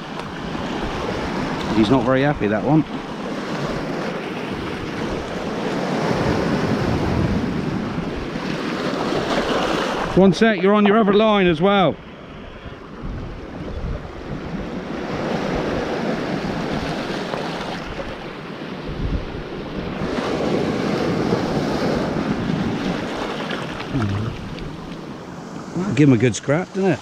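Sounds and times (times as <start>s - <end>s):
waves breaking on beach: 0.0s - 27.0s
wind buffeting microphone: 12.3s - 17.1s, 18.8s - 25.2s.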